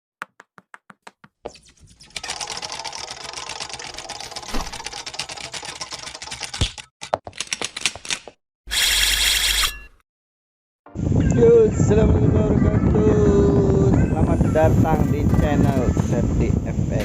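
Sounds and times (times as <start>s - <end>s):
keys typing clatter: 2.0s - 8.4s.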